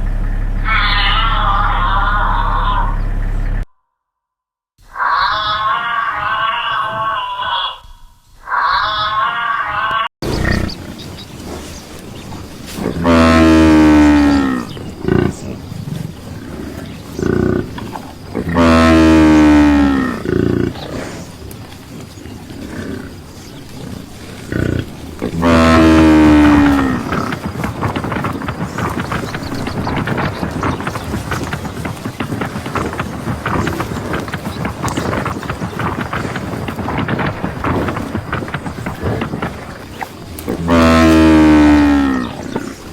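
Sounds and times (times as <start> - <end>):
large animal deep calls: 0.0 - 3.6, 4.9 - 42.9
animal grunts: 10.2 - 42.9.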